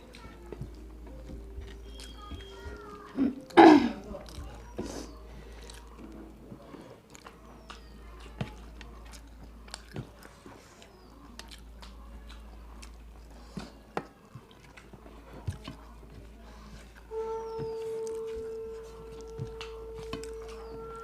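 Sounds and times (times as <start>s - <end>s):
mouth clicks and crunches: 0.0s - 17.1s
biting and chewing: 0.0s - 21.0s
low steady hum: 14.7s - 21.0s.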